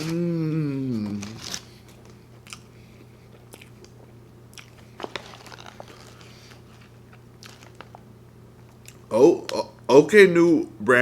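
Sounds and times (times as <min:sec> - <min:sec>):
wet chewing mouth clicks: 0:03.4 - 0:04.8.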